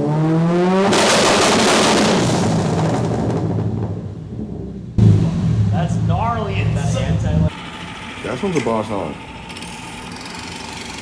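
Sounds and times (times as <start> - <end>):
exhaust pops and bangs: 0.9 - 7.5.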